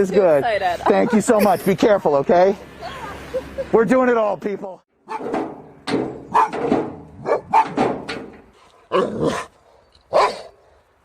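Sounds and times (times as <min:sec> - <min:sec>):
dog barking: 0:06.3 - 0:06.6, 0:07.2 - 0:07.8, 0:10.1 - 0:10.6.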